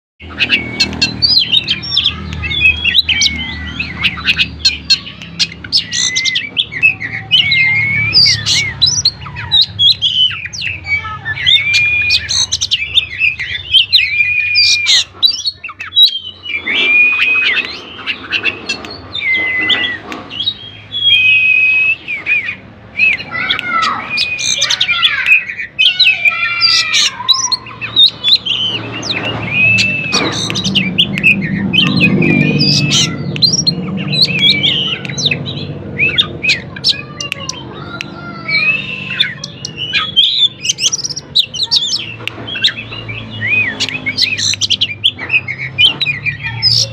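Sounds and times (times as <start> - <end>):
songbird singing: 0.2 - 46.9.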